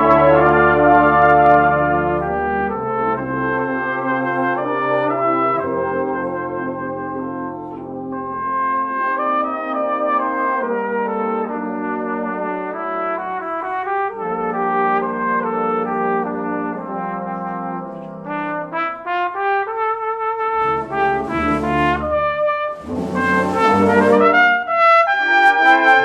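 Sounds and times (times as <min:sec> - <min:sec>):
cornet playing a melody: 0:00.0 - 0:26.0
deeper notes: 0:20.6 - 0:26.0.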